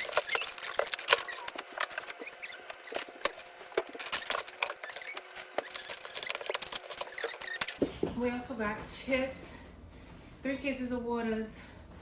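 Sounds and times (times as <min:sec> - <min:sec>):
plastic crinkling and rustling: 0:00.0 - 0:07.8.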